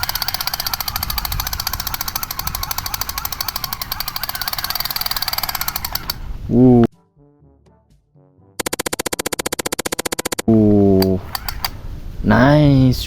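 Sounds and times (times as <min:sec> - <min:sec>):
rapid clicking rattle: 0:00.0 - 0:06.3, 0:08.6 - 0:10.4, 0:11.2 - 0:11.8.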